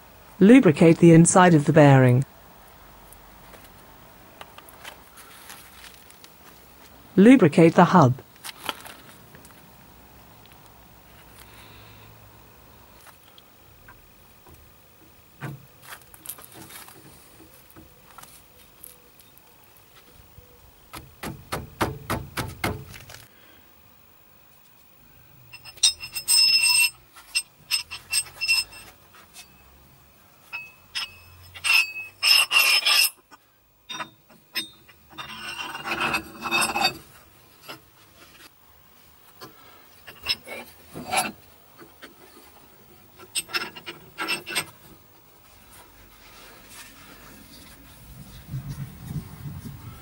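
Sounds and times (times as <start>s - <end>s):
steel tool parts clinking: 25.5s - 29.5s, 30.5s - 33.2s, 33.9s - 37.0s.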